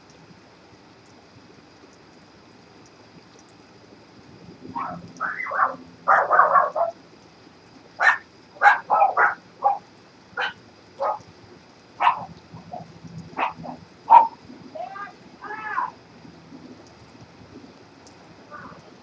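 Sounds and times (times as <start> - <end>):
animal calling: 4.8 - 7.0, 8.0 - 11.2, 12.0 - 16.0, 18.5 - 18.9.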